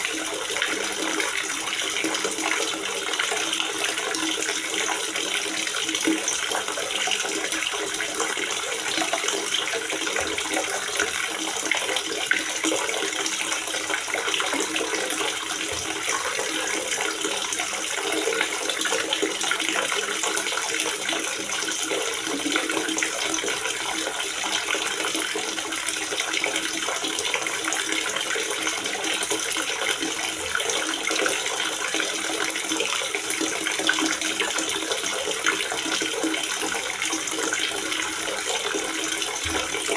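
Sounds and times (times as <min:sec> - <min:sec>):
water gurgling and splashing: 0:00.0 - 0:39.9.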